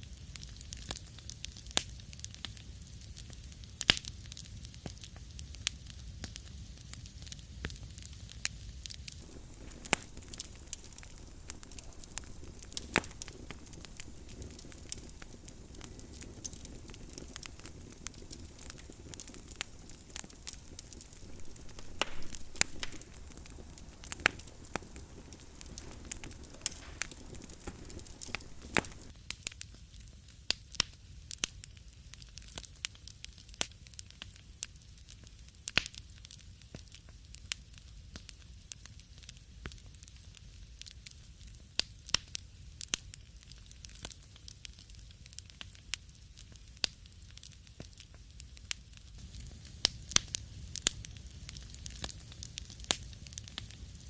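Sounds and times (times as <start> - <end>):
wood fire crackling and popping: 0.1 - 54.0
low hiss: 9.1 - 29.1, 49.2 - 54.0.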